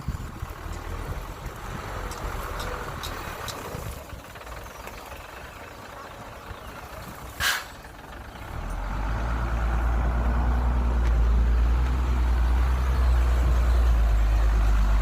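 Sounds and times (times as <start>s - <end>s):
dump truck diesel engine rumbling: 0.0s - 15.0s.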